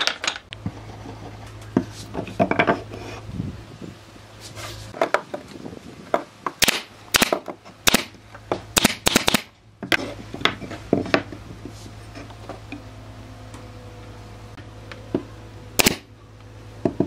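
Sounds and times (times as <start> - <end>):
hard objects knocking and clicking: 1.7 - 2.9
steady low hum: 6.6 - 17.0.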